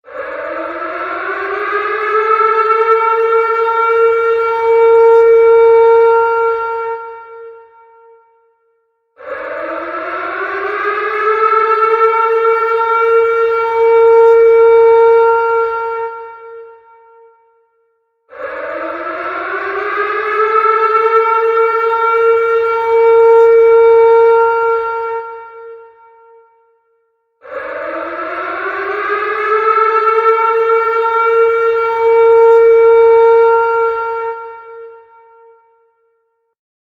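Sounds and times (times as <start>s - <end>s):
tornado warning siren wailing: 0.0s - 8.2s, 9.2s - 17.3s, 18.3s - 26.4s, 27.4s - 35.9s.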